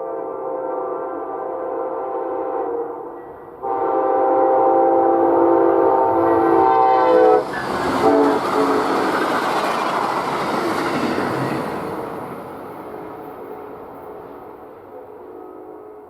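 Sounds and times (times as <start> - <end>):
train air horn blasts: 0.0 - 9.1, 15.1 - 16.0
train wheels rolling on rails: 5.8 - 15.3.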